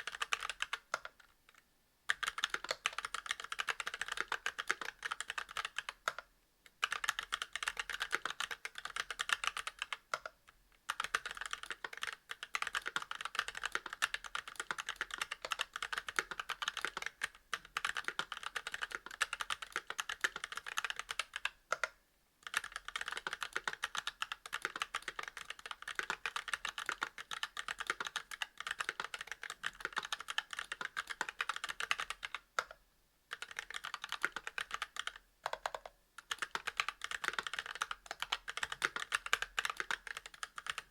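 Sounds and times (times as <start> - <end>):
fast mechanical keyboard typing: 0.0 - 1.2, 2.1 - 6.2, 6.8 - 10.3, 10.9 - 32.7, 33.3 - 40.9.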